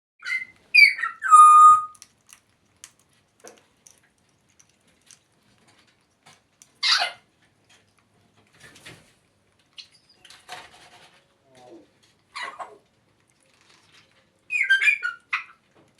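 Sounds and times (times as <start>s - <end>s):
parrot whistling: 0.2s - 2.0s.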